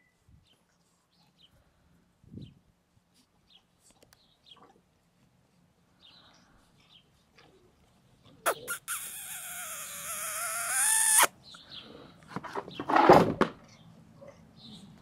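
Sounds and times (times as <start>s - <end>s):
dog whining: 8.5s - 11.3s.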